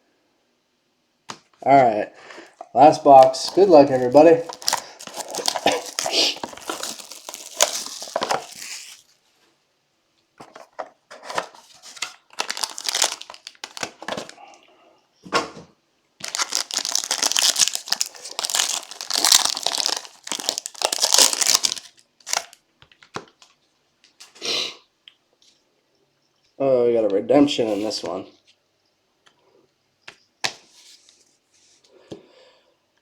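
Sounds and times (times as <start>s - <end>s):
plastic wrapping crinkling and tearing: 2.9s - 9.2s, 10.6s - 14.4s, 16.2s - 22.6s.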